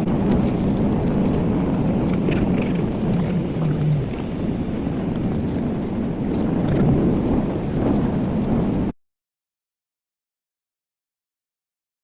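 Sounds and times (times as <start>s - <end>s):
airplane cabin engine rumble: 0.0s - 8.9s.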